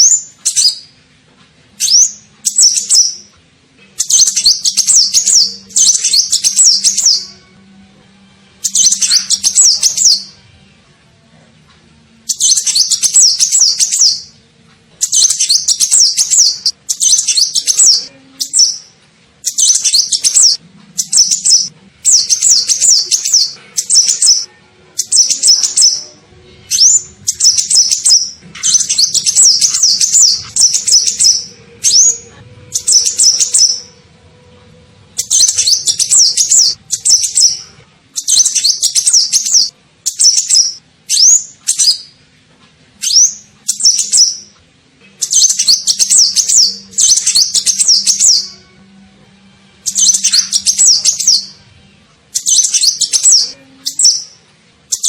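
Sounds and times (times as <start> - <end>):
high-pitched bird chirping: 0.0 - 1.0, 1.8 - 3.4, 4.0 - 7.6, 8.6 - 10.4, 12.2 - 14.4, 15.0 - 34.1, 35.1 - 42.2, 43.0 - 44.6, 45.2 - 48.8, 49.8 - 51.7, 52.3 - 55.0.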